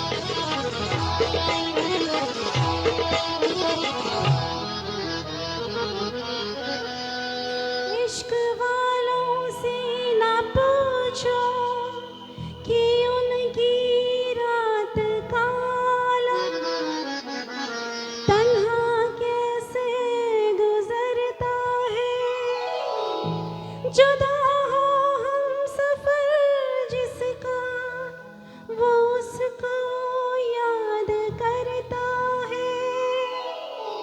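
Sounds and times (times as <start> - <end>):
ornamented instrumental lead melody: 0.0 - 13.9.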